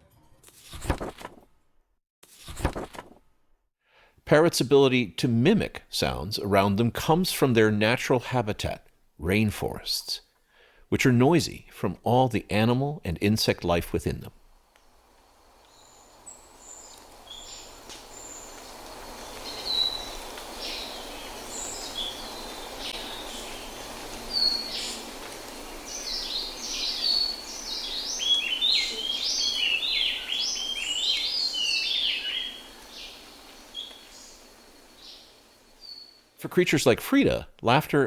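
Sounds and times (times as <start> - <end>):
steady background hiss: 12.7 - 38.0
birds chirping and whistling: 15.7 - 25.1, 25.8 - 34.4.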